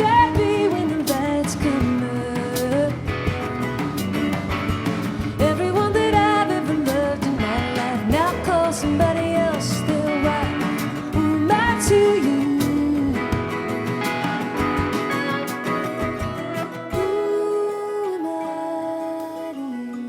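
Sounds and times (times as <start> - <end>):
strummed acoustic guitar: 0.0 - 20.0
sliding melody line: 11.2 - 17.8.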